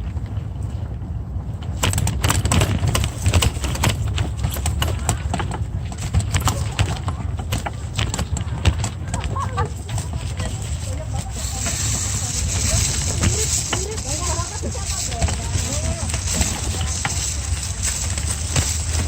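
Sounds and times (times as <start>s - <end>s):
wind buffeting microphone: 0.0s - 19.0s
bike clicks and knocks: 1.6s - 19.0s
faint voices of passers-by: 3.0s - 19.0s.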